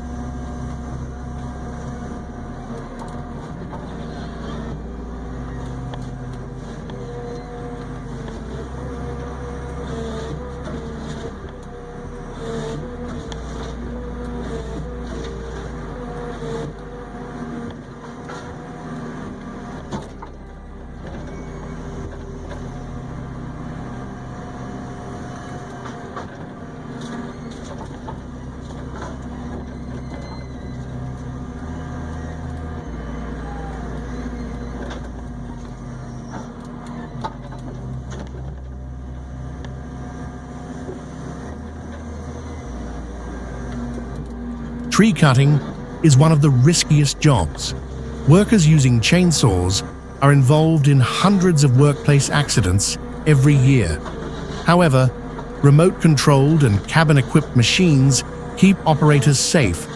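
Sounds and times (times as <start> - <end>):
diesel engine running under load: 0.0 - 30.0.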